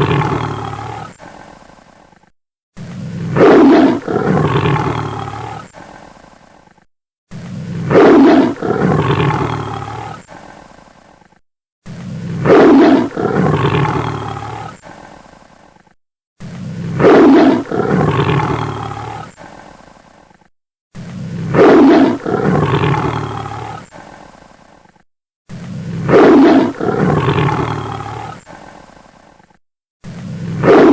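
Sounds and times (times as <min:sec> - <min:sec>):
tiger roar: 0:00.0 - 0:01.6, 0:02.8 - 0:06.0, 0:07.3 - 0:15.1, 0:16.4 - 0:19.7, 0:20.3 - 0:24.2, 0:24.8 - 0:28.8, 0:30.1 - 0:30.9.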